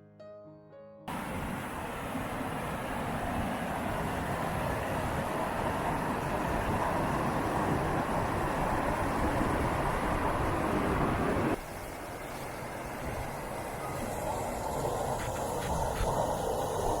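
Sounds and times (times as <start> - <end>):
river water rushing over rocks: 1.1 - 13.2.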